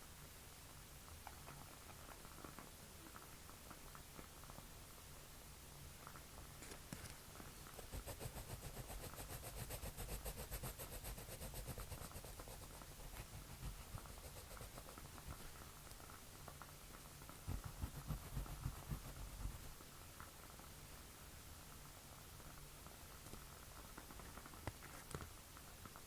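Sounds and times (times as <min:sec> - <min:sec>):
pencil scratching on paper: 0:07.7 - 0:15.5, 0:17.5 - 0:19.8
soft low thumps: 0:17.5 - 0:19.7.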